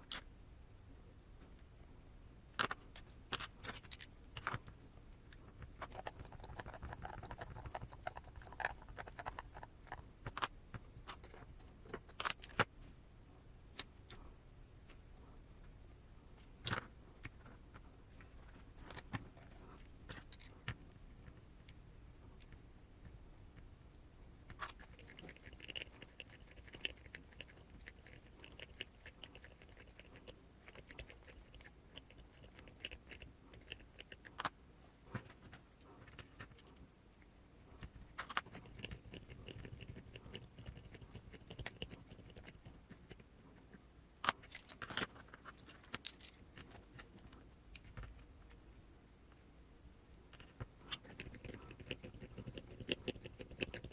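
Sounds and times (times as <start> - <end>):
light clicks of small parts: 2.5 - 5.8, 44.2 - 48.6.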